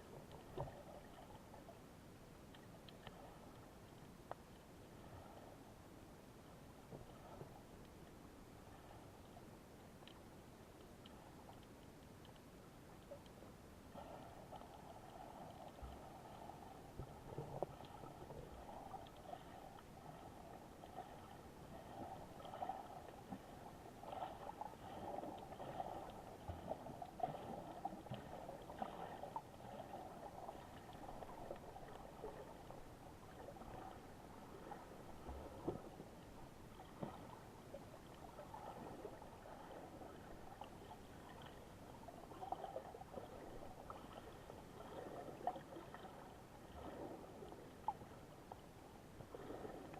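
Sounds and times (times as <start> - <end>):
sea water lapping and gurgling: 0.0 - 49.9
small water splashes: 14.2 - 48.3.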